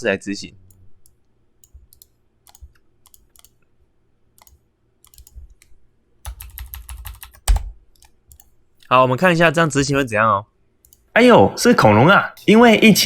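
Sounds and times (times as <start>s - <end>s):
computer mouse clicks: 0.7s - 3.6s, 4.4s - 8.6s, 10.8s - 11.0s
keyboard keystrokes: 4.4s - 5.7s, 6.3s - 8.5s.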